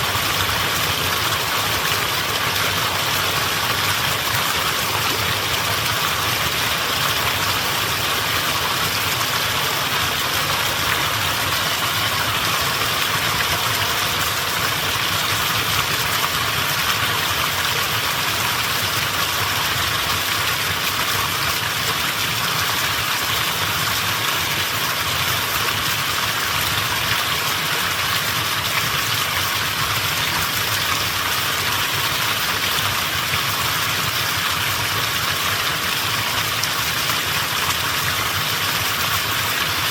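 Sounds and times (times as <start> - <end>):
stream water rushing over rocks: 0.0 - 39.9.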